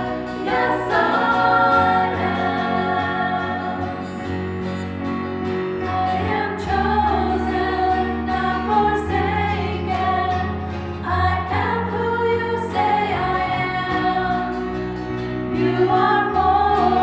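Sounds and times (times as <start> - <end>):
instrumental accompaniment: 0.0 - 11.3
choir singing a hymn: 0.0 - 17.0.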